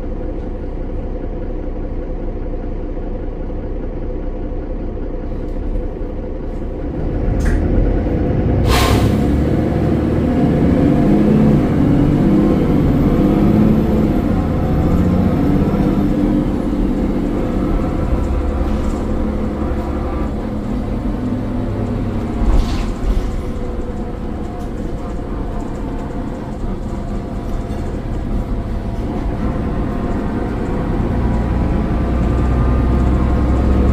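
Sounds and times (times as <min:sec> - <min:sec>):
diesel bus engine running: 0:00.0 - 0:33.9.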